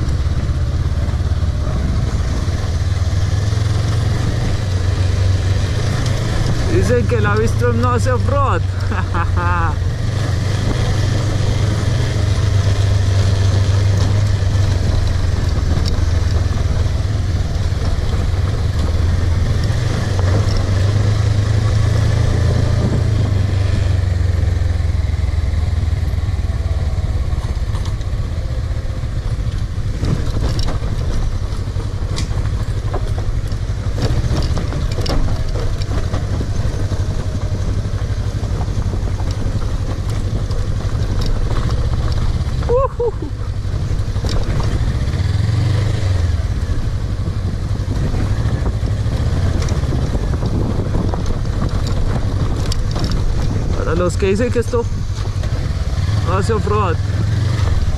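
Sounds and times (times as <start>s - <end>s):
motorcycle engine running: 0.0s - 57.9s
sharp clicks and knocks: 10.3s - 23.3s, 27.4s - 42.7s, 43.6s - 57.9s.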